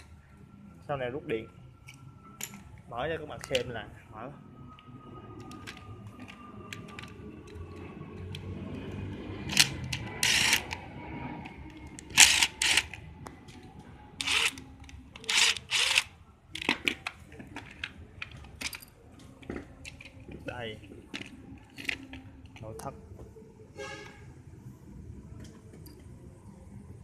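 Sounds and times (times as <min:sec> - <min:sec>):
screwdriver clicks and scraping: 0:09.5 - 0:10.8, 0:11.6 - 0:13.6, 0:14.2 - 0:18.9.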